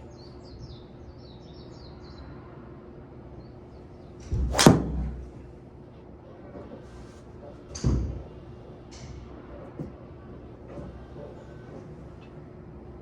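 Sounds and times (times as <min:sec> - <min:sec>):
golf club striking ball: 0:04.3 - 0:05.4.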